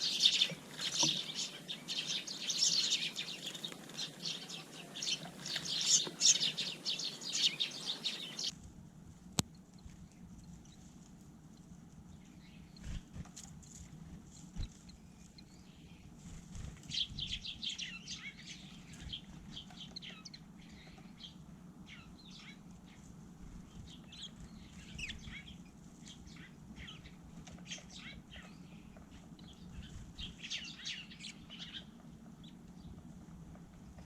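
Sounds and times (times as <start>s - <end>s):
small birds chirping: 0.0s - 8.6s, 9.3s - 34.0s
wing flutters: 12.7s - 15.3s.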